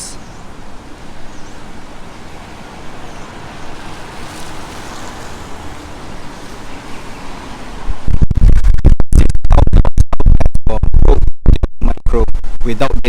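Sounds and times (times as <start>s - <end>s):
outdoor background hiss: 0.0s - 8.5s.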